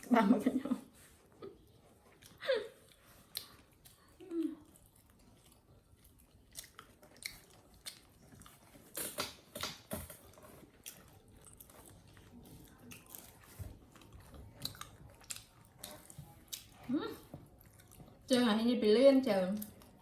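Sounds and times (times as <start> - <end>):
chewing and crunching food: 0.0 - 20.0.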